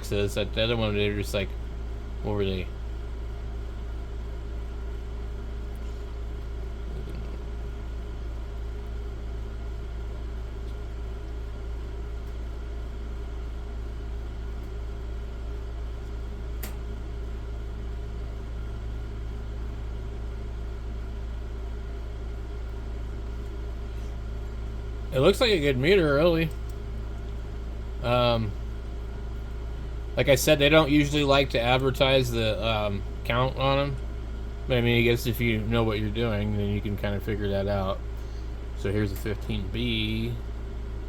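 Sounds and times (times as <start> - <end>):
low hum: 0.0 - 41.0
sharp click: 16.6 - 16.8.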